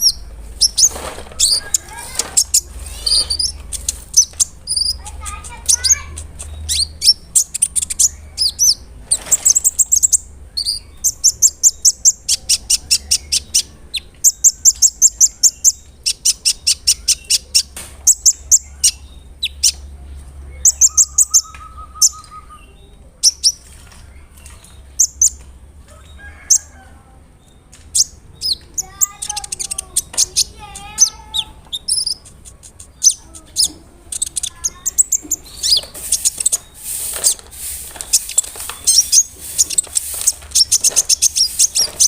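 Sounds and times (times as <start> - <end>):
sunbird singing high trills: 20.6 - 23.6.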